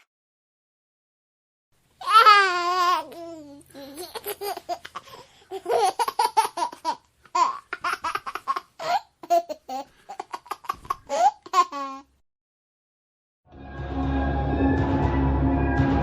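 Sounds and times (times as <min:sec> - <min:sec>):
baby giggling: 0:02.0 - 0:12.1.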